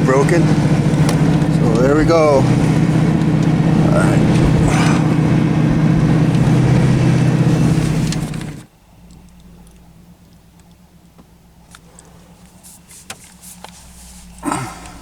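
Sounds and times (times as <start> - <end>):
truck engine running hard: 0.0 - 15.0
faint clicks: 7.8 - 13.9.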